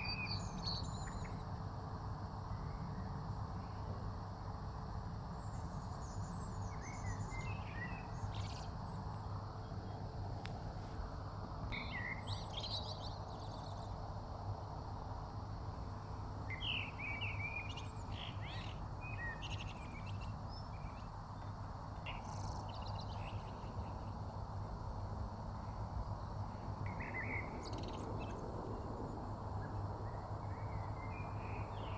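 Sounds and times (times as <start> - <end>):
low outdoor background hum: 0.0 - 31.9
birds chirping: 16.5 - 21.5.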